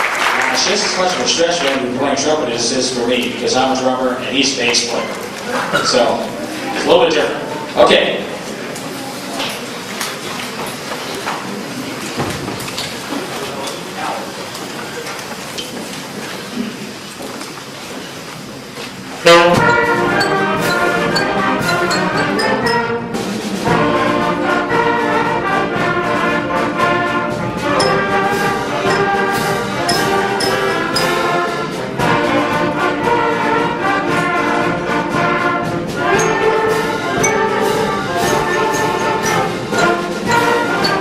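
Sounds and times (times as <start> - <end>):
wind band playing: 19.2 - 41.0
drum strikes: 19.3 - 24.3, 27.6 - 32.8, 35.8 - 41.0.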